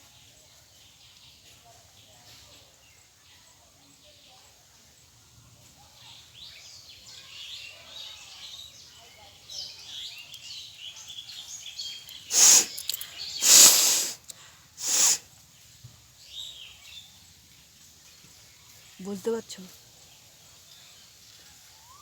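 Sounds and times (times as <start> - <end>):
birds chirping: 8.5 - 15.2
person blowing nose: 12.3 - 12.8, 13.4 - 15.2.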